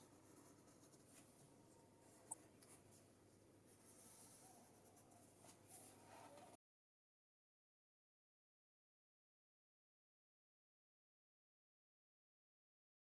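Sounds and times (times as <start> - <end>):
pencil scratching on paper: 0.0 - 3.1, 3.7 - 6.6.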